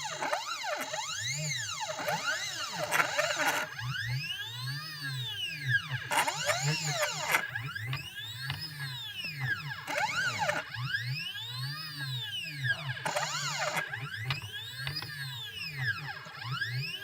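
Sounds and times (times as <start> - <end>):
stepper motor whine: 0.0 - 8.8, 9.4 - 11.0, 13.0 - 14.0.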